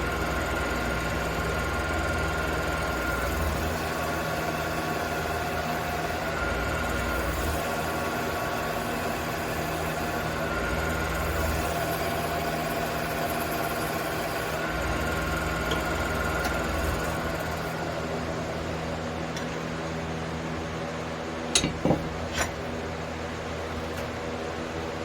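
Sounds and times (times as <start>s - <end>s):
lathe motor humming: 0.0s - 19.8s.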